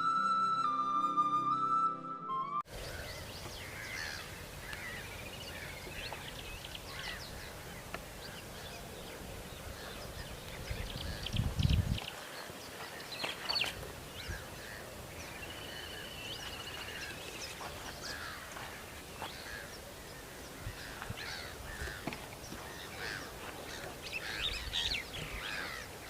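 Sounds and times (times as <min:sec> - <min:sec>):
wild birds calling: 0:02.7 - 0:26.0
wind rumble on microphone: 0:09.2 - 0:12.2.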